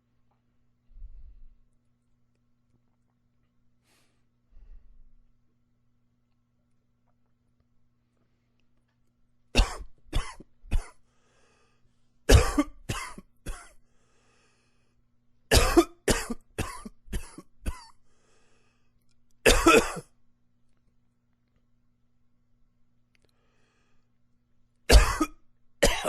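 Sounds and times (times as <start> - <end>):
faint breaths: 3.8 - 5.3, 11.0 - 12.2, 13.8 - 15.1, 18.0 - 19.1, 23.2 - 24.2
man coughing: 9.6 - 11.0, 12.3 - 13.7, 15.5 - 17.9, 19.5 - 20.1, 24.9 - 26.0.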